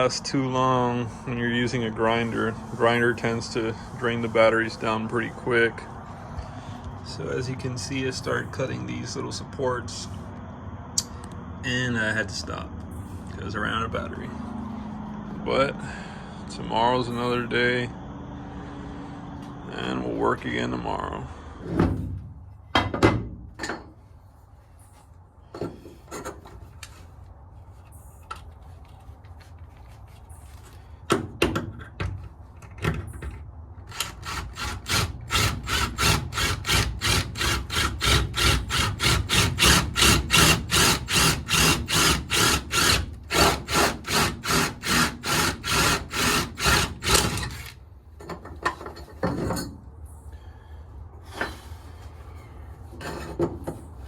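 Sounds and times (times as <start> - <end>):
hand tool worked back and forth: 33.8 - 49.7.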